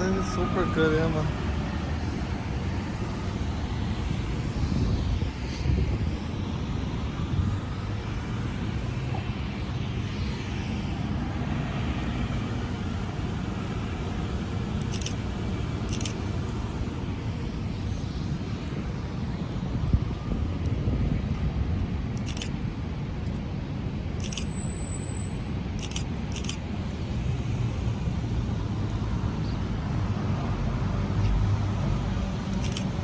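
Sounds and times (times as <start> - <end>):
traffic rumble: 0.0 - 33.0
short clicks: 32.5 - 33.0.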